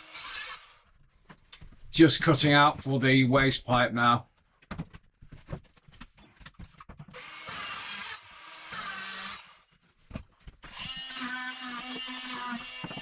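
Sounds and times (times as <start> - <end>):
power tool cutting: 0.0 - 0.8, 7.2 - 9.7, 10.7 - 13.0.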